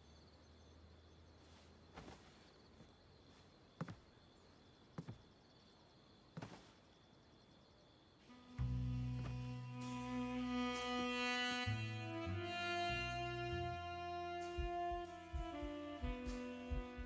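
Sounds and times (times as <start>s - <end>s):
low bowed-string music: 8.3s - 17.0s.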